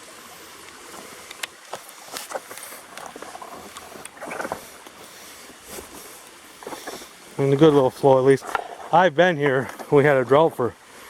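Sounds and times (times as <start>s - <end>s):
small waterfall hissing: 0.0s - 11.0s
footsteps on rocky ground: 1.7s - 8.0s.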